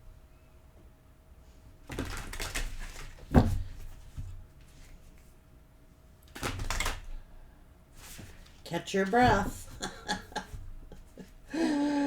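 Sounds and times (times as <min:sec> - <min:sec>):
cards shuffling: 0:01.9 - 0:03.3, 0:06.3 - 0:07.1.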